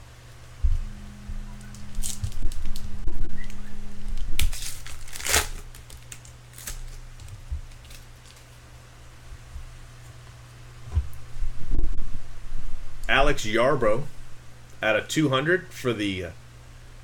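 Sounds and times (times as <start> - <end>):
wrapper crinkling and tearing: 1.7 - 2.9, 3.5 - 8.6.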